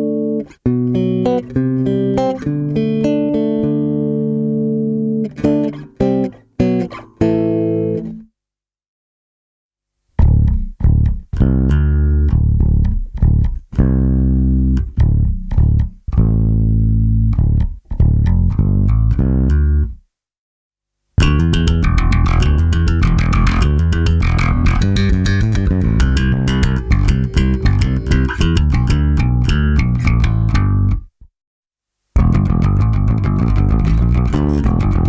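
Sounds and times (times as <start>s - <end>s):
bass guitar plucked notes: 10.2s - 20.0s, 21.2s - 31.3s, 32.2s - 35.0s.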